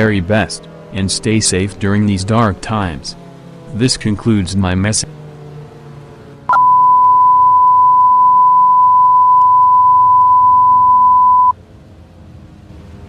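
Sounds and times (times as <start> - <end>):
steady sine alert tone: 6.5 - 11.5.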